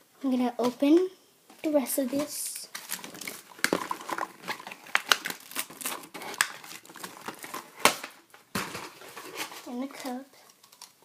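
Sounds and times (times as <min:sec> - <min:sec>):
plastic packaging crinkling: 0:02.0 - 0:11.0.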